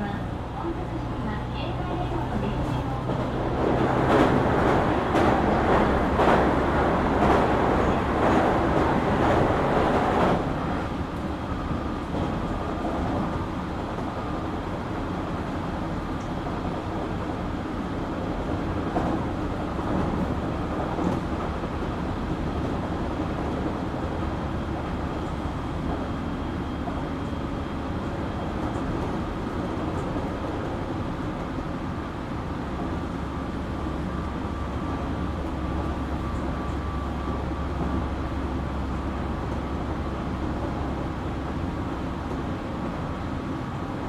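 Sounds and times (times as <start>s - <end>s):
train motors rumbling: 0.0s - 17.4s
train wheels on rail: 0.0s - 44.0s.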